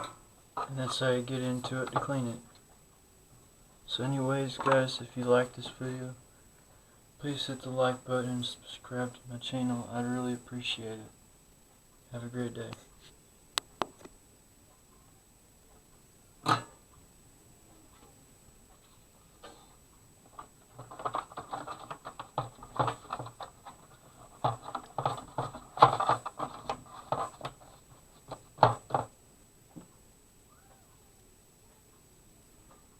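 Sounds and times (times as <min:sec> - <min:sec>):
handling clicks and taps: 0:20.3 - 0:29.9.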